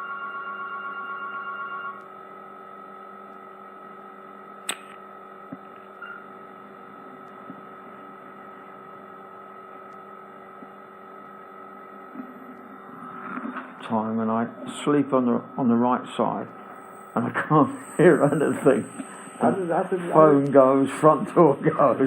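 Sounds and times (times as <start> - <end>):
electrical hum with whine: 0.0 - 22.0
sharp click: 4.6 - 5.0.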